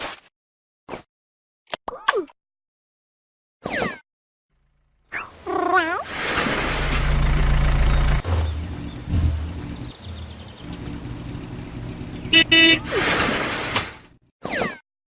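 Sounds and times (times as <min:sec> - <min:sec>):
car horn toots: 0:10.7 - 0:13.0.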